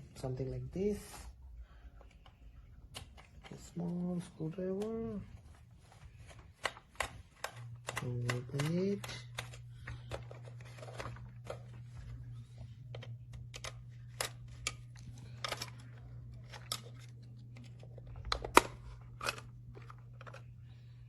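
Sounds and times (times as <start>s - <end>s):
plastic clicks and taps: 6.3s - 11.6s.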